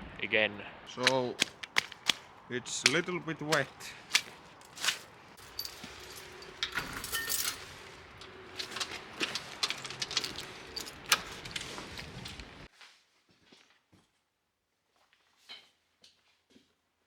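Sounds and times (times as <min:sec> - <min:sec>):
scattered clicks and knocks: 0:01.0 - 0:04.7, 0:05.4 - 0:11.7.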